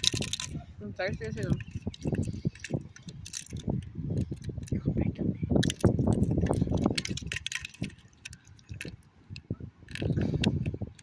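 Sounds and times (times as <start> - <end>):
handling clicks and rustling: 0.0 - 4.9, 5.6 - 11.0.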